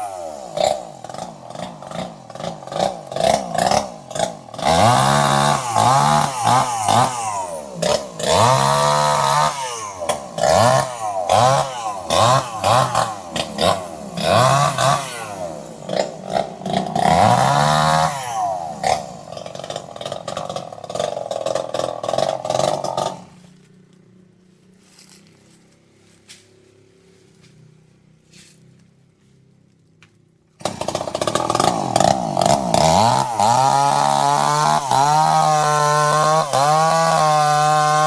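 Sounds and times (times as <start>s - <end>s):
chainsaw engine revving: 0.0s - 24.0s, 30.6s - 38.0s.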